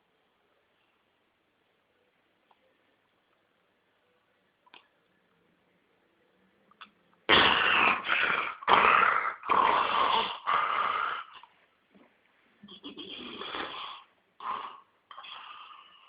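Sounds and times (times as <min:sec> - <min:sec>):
pet snoring: 0:07.4 - 0:11.5, 0:12.7 - 0:16.0.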